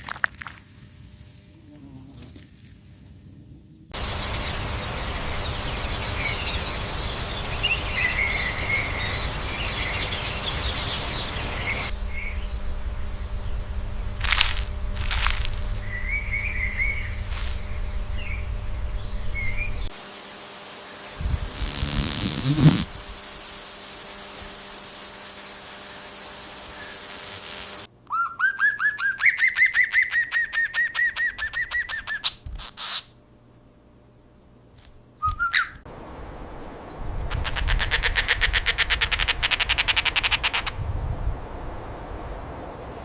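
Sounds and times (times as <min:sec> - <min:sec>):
bird chirping trill: 0:04.0 - 0:19.9, 0:21.2 - 0:32.4, 0:35.2 - 0:35.8
high buzzy trill: 0:10.7 - 0:27.9.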